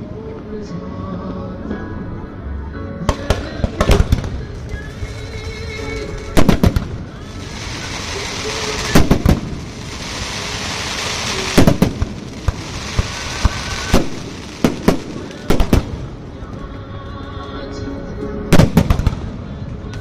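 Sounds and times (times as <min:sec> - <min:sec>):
firework crackling hiss: 0:03.4 - 0:16.4.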